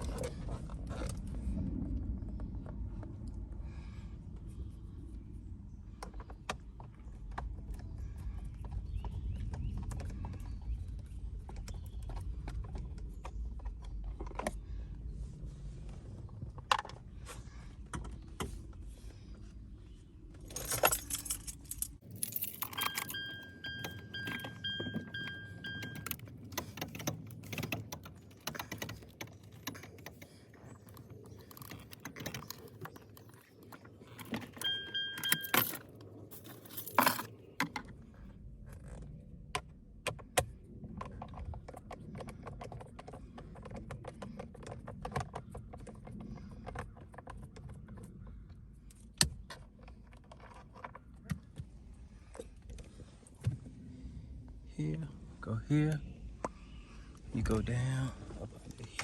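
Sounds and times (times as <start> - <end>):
keys jangling: 20.5 - 30.2, 34.1 - 37.4
pulsing electronic beep: 22.8 - 26.1, 34.6 - 35.5.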